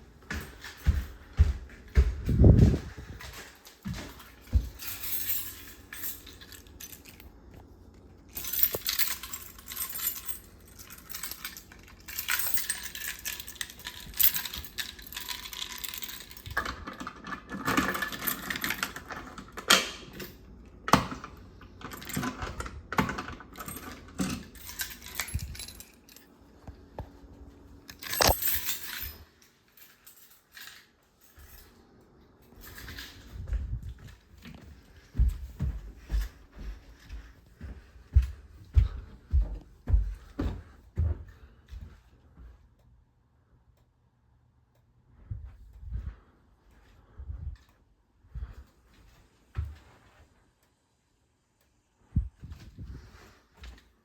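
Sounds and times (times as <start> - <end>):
light metallic jingle: 0.3 - 7.4, 8.3 - 16.8, 23.6 - 26.4, 27.8 - 40.5
small objects clinking and clattering: 8.3 - 20.4, 27.9 - 30.9.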